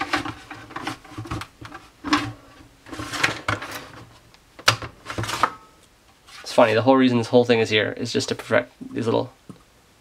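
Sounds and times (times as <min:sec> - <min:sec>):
plastic parts clicking and scraping: 0:00.0 - 0:05.6.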